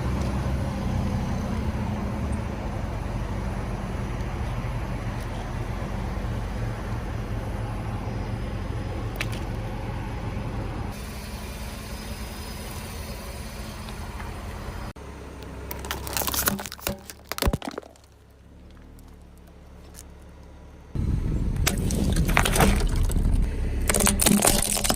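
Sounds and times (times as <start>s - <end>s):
car engine running: 0.0s - 24.9s
tyre crushing objects: 15.7s - 20.1s, 21.6s - 24.9s.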